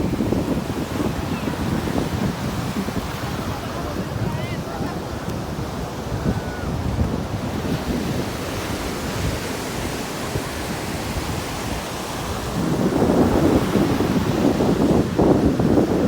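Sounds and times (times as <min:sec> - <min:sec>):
ocean surf washing: 0:00.0 - 0:16.0
wind buffeting microphone: 0:00.0 - 0:16.0.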